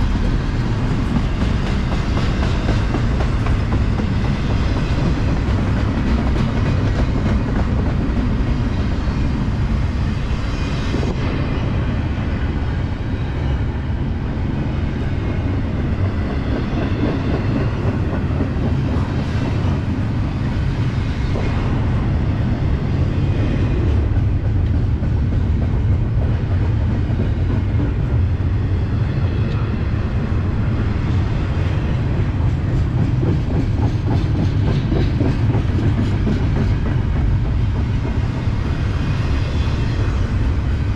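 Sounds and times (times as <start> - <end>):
train wheels rumbling on rails: 0.0 - 40.9.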